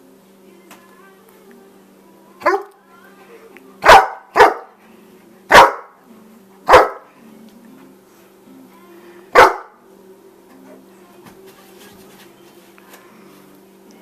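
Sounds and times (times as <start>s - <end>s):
dog barking: 2.4s - 2.7s, 3.8s - 4.8s, 5.5s - 6.0s, 6.7s - 7.1s, 9.4s - 9.8s.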